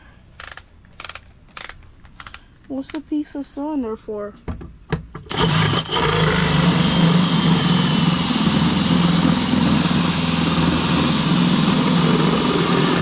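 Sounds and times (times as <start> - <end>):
power drill boring: 5.3 - 13.0.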